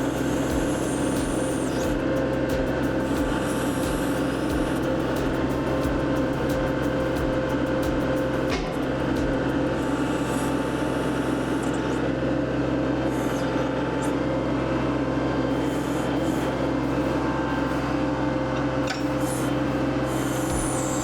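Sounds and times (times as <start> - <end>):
tractor diesel engine running: 0.0 - 12.9.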